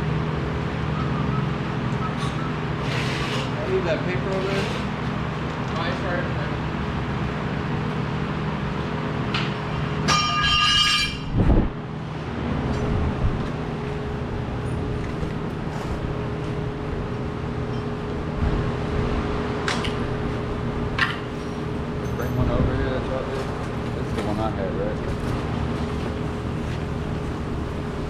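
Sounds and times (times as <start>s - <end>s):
workshop hum: 0.0s - 28.0s
ringing metallic clank: 10.0s - 11.4s.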